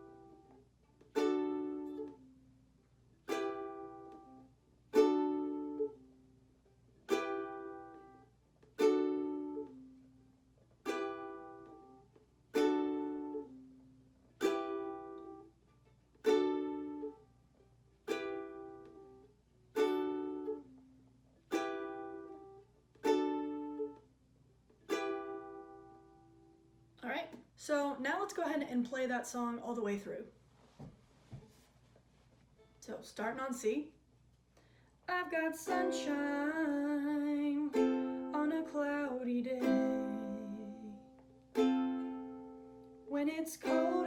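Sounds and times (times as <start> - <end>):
ukulele chords strummed: 0.0 - 24.1, 24.7 - 26.8, 35.2 - 44.0.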